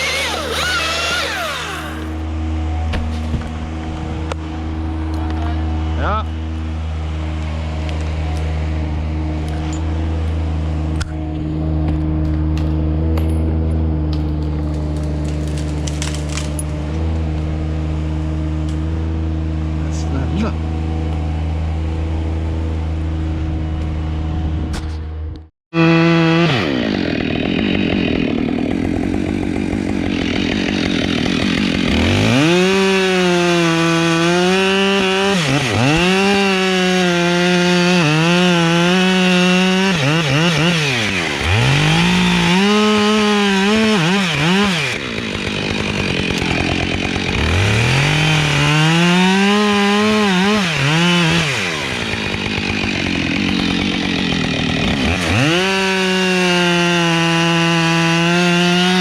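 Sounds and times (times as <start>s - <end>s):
chainsaw cutting wood: 0.0s - 5.8s, 6.5s - 19.8s, 25.8s - 59.0s.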